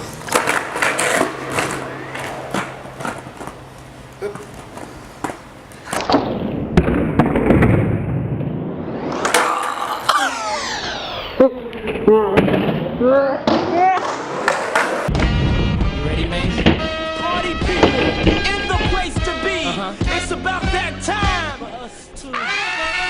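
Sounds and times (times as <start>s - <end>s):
skateboard popping and landing: 0.0s - 15.1s, 16.4s - 19.6s
skateboard wheels rolling: 0.0s - 21.4s.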